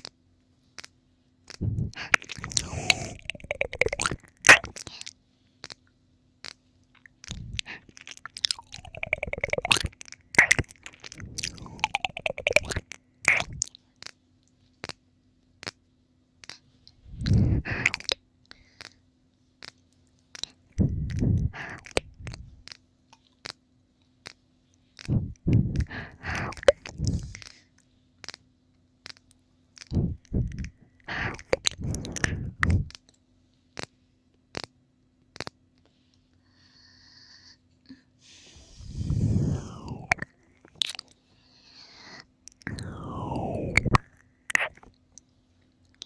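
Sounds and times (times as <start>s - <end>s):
wet licking and smacking: 1.5s - 5.0s, 7.2s - 13.7s, 17.2s - 18.2s, 25.0s - 27.5s, 29.8s - 33.1s, 43.7s - 45.0s
sharp mouth clicks: 1.5s - 5.8s, 7.2s - 14.2s, 17.2s - 19.0s, 19.6s - 23.6s, 25.0s - 27.6s, 28.2s - 28.4s, 29.0s - 33.2s, 34.5s - 34.7s, 35.4s - 35.9s, 39.1s - 41.1s, 42.5s - 45.3s.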